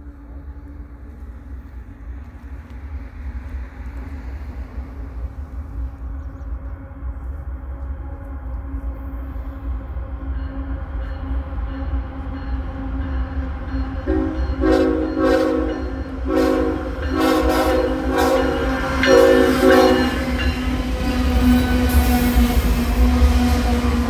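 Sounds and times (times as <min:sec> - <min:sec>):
locomotive low rumble: 0:00.0 - 0:24.0
locomotive air horn blasts: 0:14.1 - 0:20.5.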